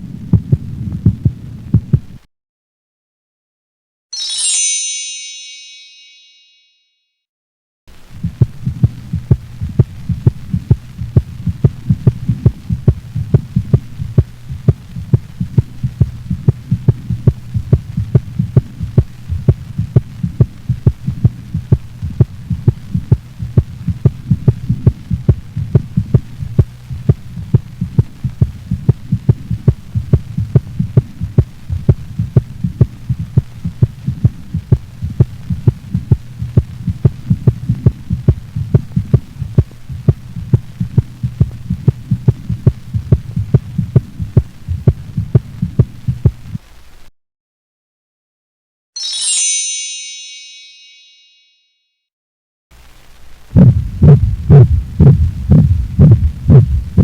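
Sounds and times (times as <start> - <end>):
dog heartbeat through stethoscope: 0.0 - 2.2, 8.1 - 46.6, 53.5 - 57.0
steady low hum: 0.0 - 2.3, 7.9 - 47.0, 52.8 - 57.0.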